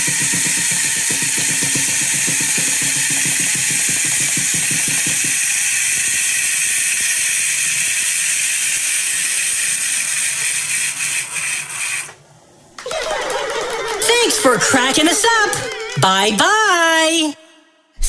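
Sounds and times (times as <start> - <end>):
drumbeat: 0.0 - 5.8, 12.8 - 16.8
loud steady hiss: 0.0 - 12.8.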